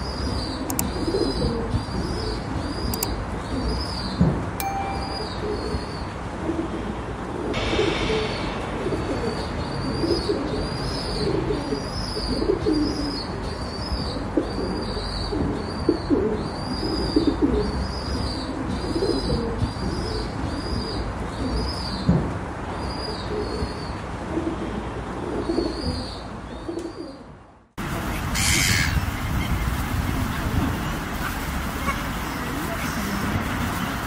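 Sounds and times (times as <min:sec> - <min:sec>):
steady background noise: 0:00.0 - 0:34.0
pigeons cooing: 0:00.4 - 0:02.9, 0:10.0 - 0:13.2, 0:14.1 - 0:17.8, 0:18.5 - 0:21.7
brief high ringing tone: 0:04.6 - 0:05.7
high short chirp: 0:04.6 - 0:05.8.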